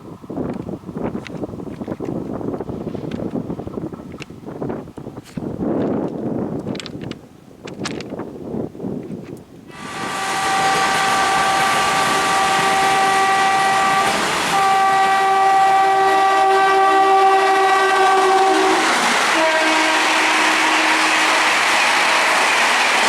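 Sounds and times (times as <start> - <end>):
lower-pitched horn note: 9.7 - 21.6
train horn blasts: 9.7 - 21.8
train running past: 9.7 - 23.0.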